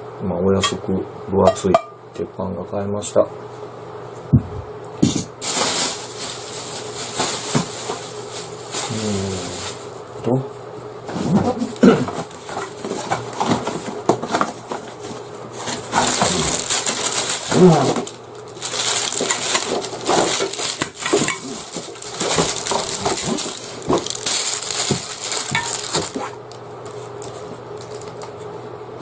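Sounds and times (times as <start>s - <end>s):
plastic packaging rustling: 5.4s - 10.0s, 11.1s - 28.5s.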